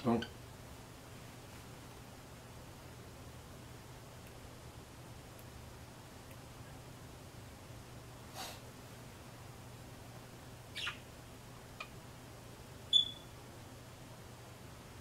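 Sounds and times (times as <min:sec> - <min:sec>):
small birds chirping: 0:10.7 - 0:11.1, 0:12.9 - 0:13.3.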